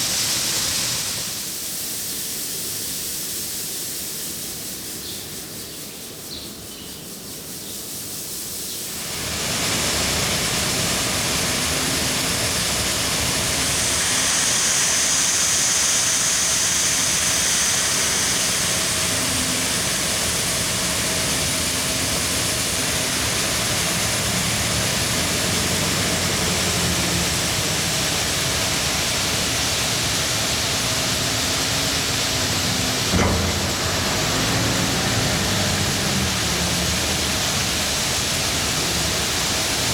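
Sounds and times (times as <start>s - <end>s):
harvesting machinery rushing noise: 9.0s - 39.9s
faint engine hum: 16.2s - 39.9s.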